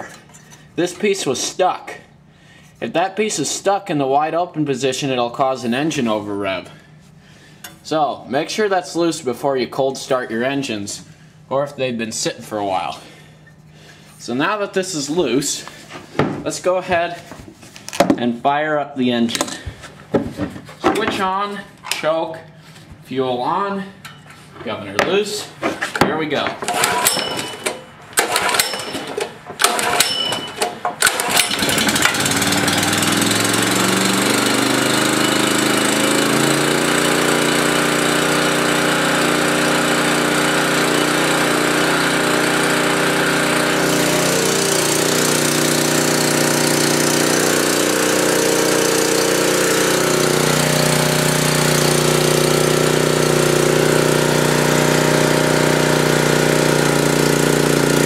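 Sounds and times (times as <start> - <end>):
generator engine cranking: 26.6 - 58.0
generator engine running: 26.6 - 58.0.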